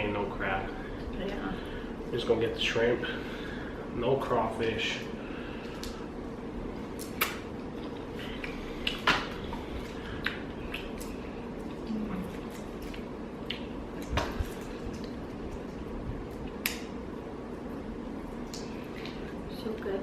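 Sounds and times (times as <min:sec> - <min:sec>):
steady background hum: 0:00.0 - 0:20.0
wet clicks and smacks of eating: 0:05.6 - 0:06.0, 0:06.9 - 0:17.1, 0:18.3 - 0:19.4.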